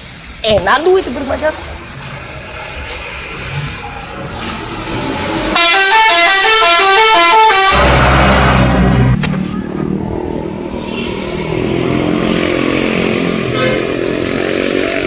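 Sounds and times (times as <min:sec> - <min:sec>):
bus engine running: 0:00.0 - 0:15.0
loud rushing noise: 0:00.0 - 0:15.0
musical air horn melody: 0:05.5 - 0:08.5, 0:13.0 - 0:14.4.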